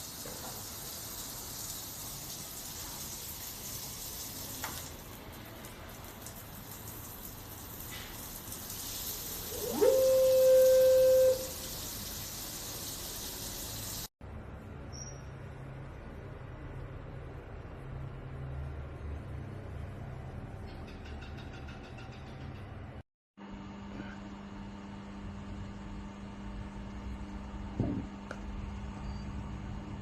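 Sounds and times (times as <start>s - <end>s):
water spraying from shower head: 0.0s - 14.1s.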